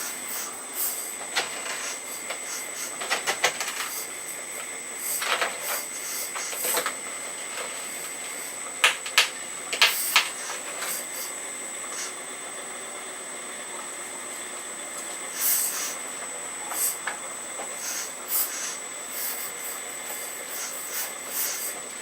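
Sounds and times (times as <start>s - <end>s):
hydraulic pump whine: 0.0s - 22.0s
hissing bursts: 1.8s - 3.0s, 3.8s - 6.8s, 15.3s - 16.0s, 17.8s - 21.8s.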